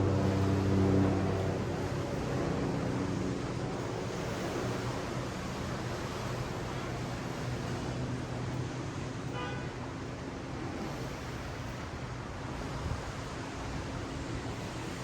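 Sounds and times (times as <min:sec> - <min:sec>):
surf washing on sandy beach: 0:00.0 - 0:15.0.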